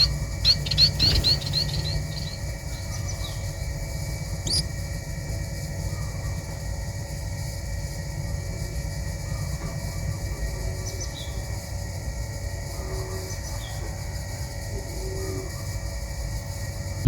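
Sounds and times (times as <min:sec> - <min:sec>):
small birds chirping: 0:00.0 - 0:04.8.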